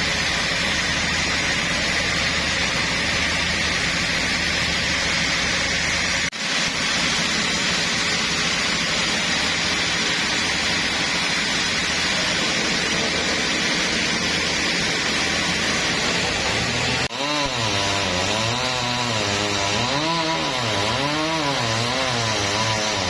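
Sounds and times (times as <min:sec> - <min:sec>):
sawmill machinery running: 0:00.0 - 0:23.0.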